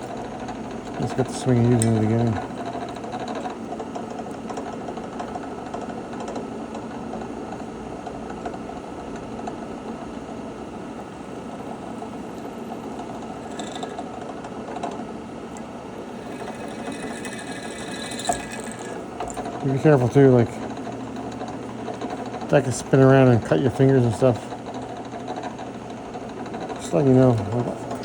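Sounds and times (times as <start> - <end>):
drill press drilling: 0.0 - 5.4, 11.2 - 23.1.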